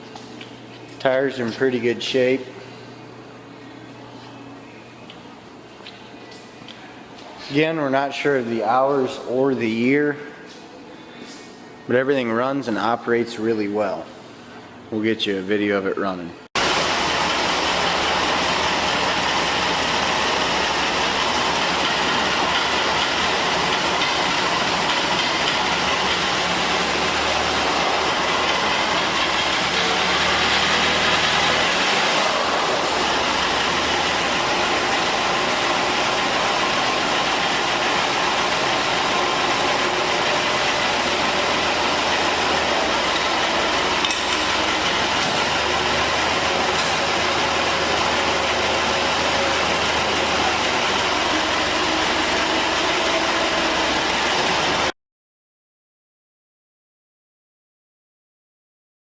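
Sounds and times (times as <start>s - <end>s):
forklift engine running: 16.6s - 54.9s.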